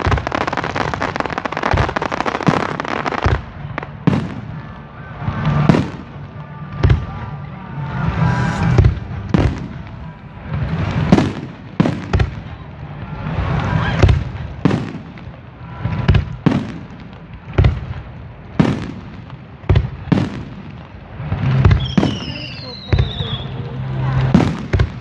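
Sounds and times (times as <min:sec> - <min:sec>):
fireworks bangs: 0:00.0 - 0:25.0.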